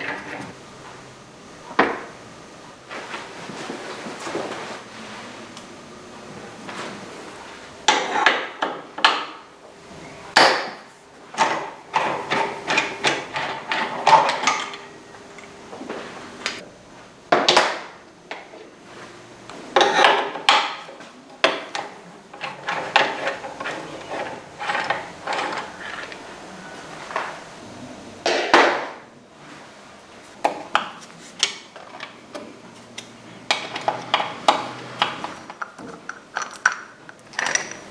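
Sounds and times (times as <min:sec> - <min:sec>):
hand tools knocking and clinking: 0:11.4 - 0:15.5, 0:33.5 - 0:37.9.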